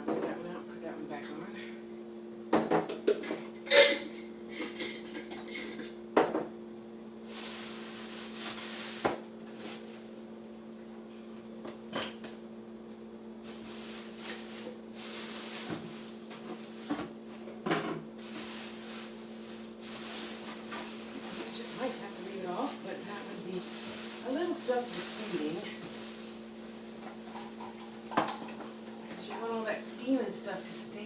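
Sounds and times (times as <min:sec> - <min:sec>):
steady low hum: 0:00.0 - 0:31.0
glass jars clinking: 0:03.6 - 0:05.9.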